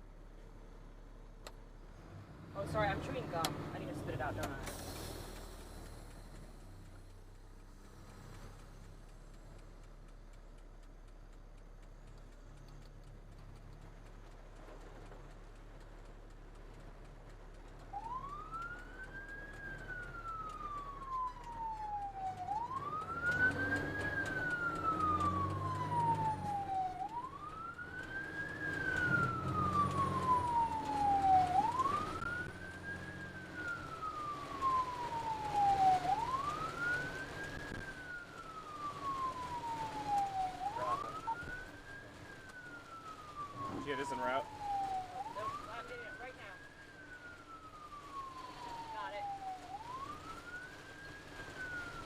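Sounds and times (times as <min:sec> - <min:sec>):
vehicle rumble: 0:00.0 - 0:52.0
ambulance siren wailing: 0:16.8 - 0:52.0.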